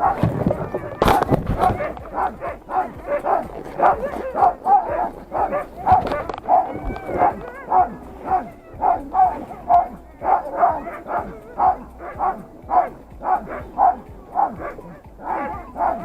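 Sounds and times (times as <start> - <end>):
dogs yipping: 0.0 - 16.0
sled dogs barking: 0.0 - 16.0.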